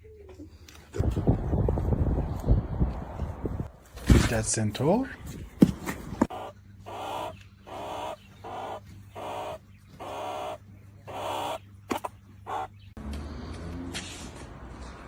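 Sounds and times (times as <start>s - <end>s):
animal harsh calls: 6.2s - 12.8s.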